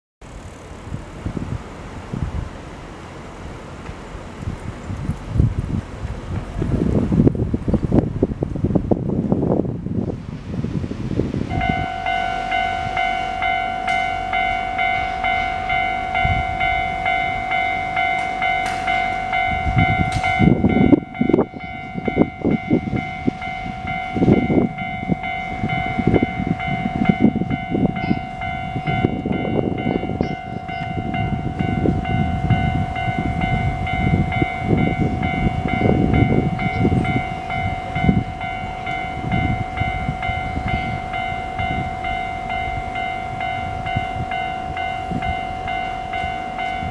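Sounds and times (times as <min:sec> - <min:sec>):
train passing with low rumble: 0:00.2 - 0:46.9
electronic level-crossing bell ringing: 0:11.5 - 0:46.9.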